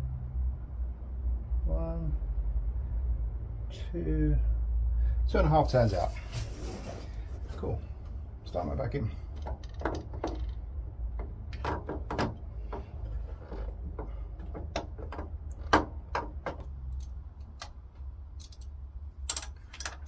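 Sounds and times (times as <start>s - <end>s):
clicks and knocks of hand work: 11.2s - 18.7s.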